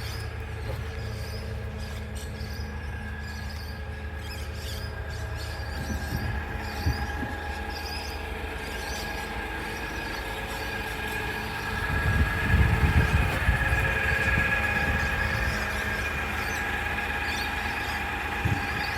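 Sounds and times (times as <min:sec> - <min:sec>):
garbage truck engine running: 0:00.0 - 0:18.9
louder rumble: 0:00.0 - 0:18.9.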